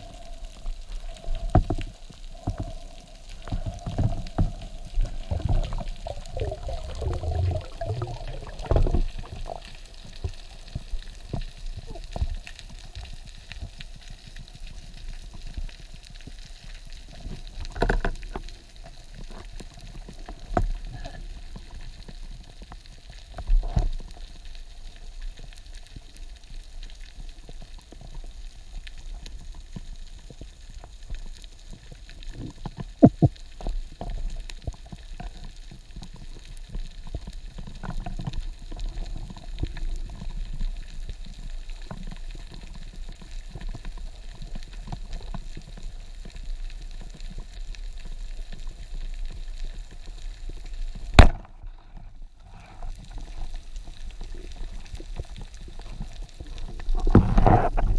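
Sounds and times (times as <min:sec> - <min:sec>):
water swishing: 0:00.0 - 0:12.6
fine underwater crackling: 0:00.0 - 0:57.9.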